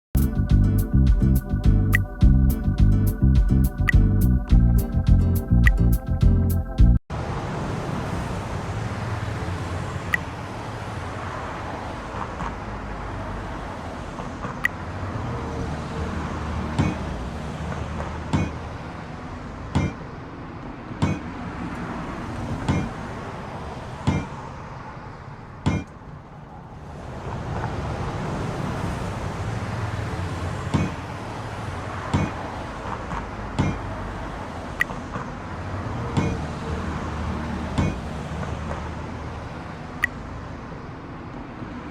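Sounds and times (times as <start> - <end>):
steady low rumble: 0.2 - 7.0
sharp metallic knocks: 16.8 - 17.0, 18.3 - 18.6, 19.7 - 20.0, 21.0 - 21.3, 22.6 - 23.0, 24.1 - 24.4, 25.6 - 26.0, 30.7 - 31.0, 32.1 - 32.4, 33.6 - 33.9, 36.2 - 36.4, 37.8 - 38.0.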